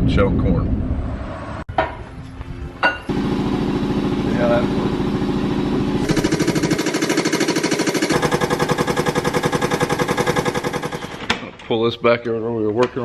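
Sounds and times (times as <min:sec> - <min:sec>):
machine engine chugging: 0:03.1 - 0:11.3.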